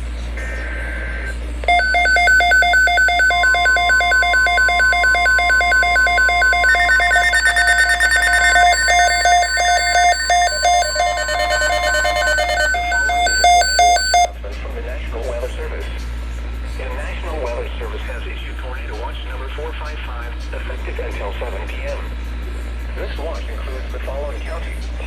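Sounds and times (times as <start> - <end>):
alarm beeping rapidly: 1.7 - 14.3
steady warning alarm tone: 1.7 - 14.3
digital data burst: 1.8 - 14.3.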